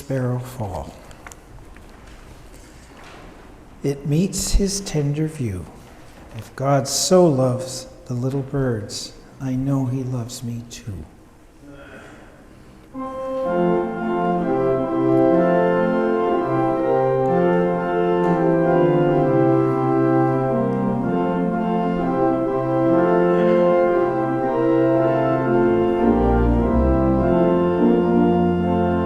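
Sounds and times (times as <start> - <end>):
organ playing hymn chords: 3.3 - 11.5, 12.9 - 29.0
deep organ pedal bass: 13.0 - 29.0.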